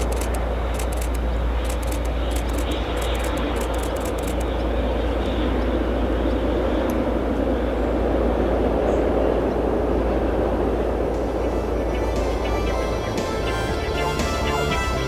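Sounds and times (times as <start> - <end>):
diesel locomotive rumbling: 5.7 - 15.0.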